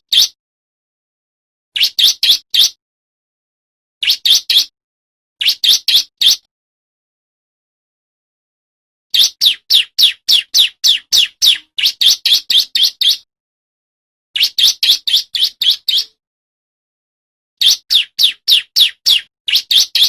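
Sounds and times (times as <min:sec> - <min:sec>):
bird singing sharp chirps: 0:09.1 - 0:13.3, 0:17.6 - 0:20.0.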